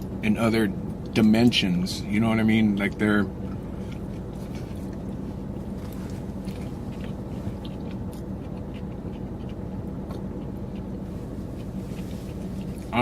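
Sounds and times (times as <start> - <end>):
low background hum: 0.0 - 13.0
man chewing food: 2.8 - 13.0.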